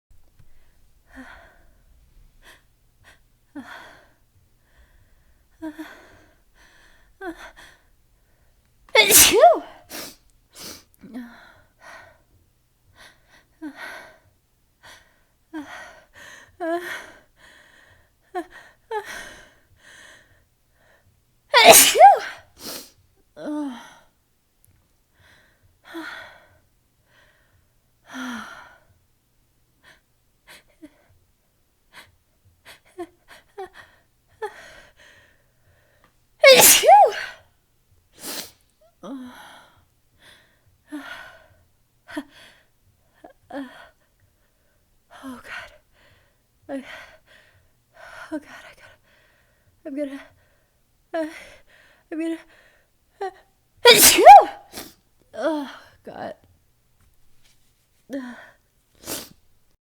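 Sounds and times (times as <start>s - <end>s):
short catching gasps: 9.0s - 9.7s, 21.6s - 22.9s, 36.4s - 37.3s, 53.9s - 54.9s
woman sneezing: 9.0s - 10.1s, 21.6s - 22.8s, 36.4s - 37.3s, 53.9s - 54.9s, 59.0s - 59.3s.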